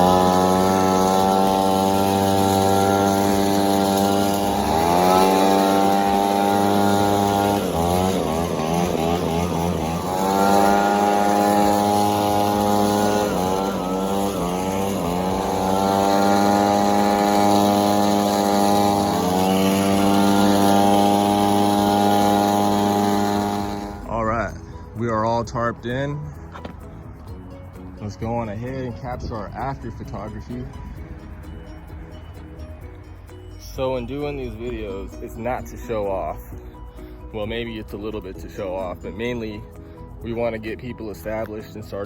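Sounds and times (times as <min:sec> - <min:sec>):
engine revving: 0:00.0 - 0:42.0.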